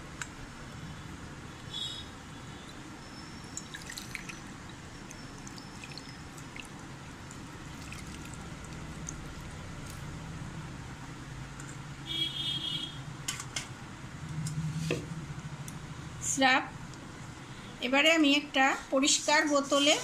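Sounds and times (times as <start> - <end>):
steady low hum: 0.0 - 12.1
syrup dripping: 3.2 - 10.0.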